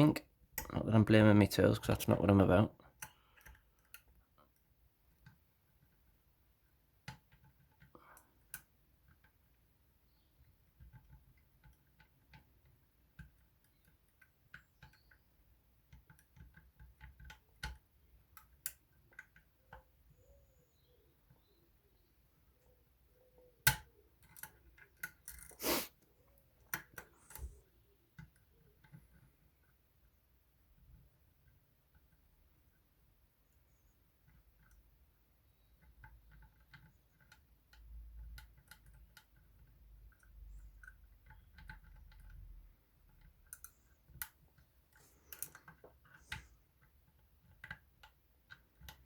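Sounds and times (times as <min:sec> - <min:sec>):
lock picks clicking and scraping: 0:02.9 - 0:06.2, 0:22.5 - 0:29.8, 0:35.6 - 0:49.0.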